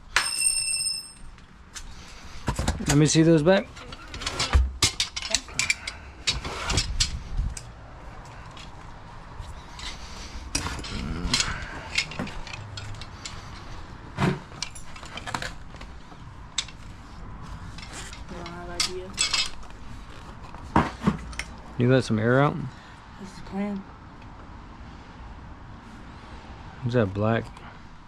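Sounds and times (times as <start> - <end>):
tire levers clinking on wheel rim: 0.0 - 1.9, 2.8 - 7.7, 9.7 - 17.0, 17.7 - 20.2.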